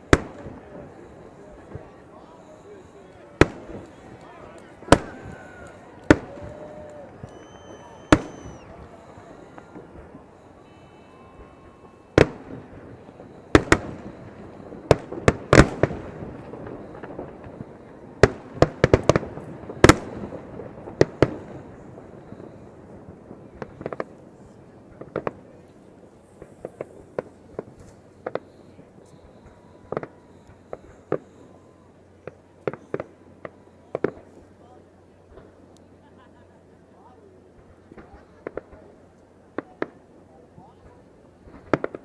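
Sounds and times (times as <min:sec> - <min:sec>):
fireworks bangs with echo: 0:00.0 - 0:35.7, 0:37.0 - 0:42.0.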